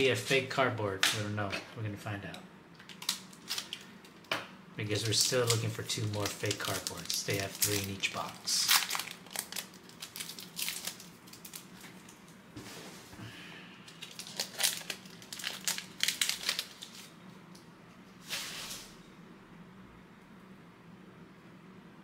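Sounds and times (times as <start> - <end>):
wrapper crinkling: 2.8 - 4.2, 4.9 - 12.2, 13.9 - 17.1.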